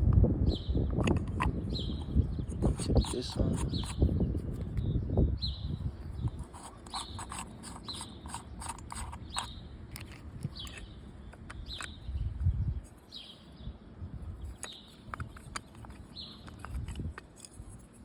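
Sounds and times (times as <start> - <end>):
bird chirping: 0.5 - 17.8
small metal parts clicking: 6.6 - 12.1, 14.4 - 18.0.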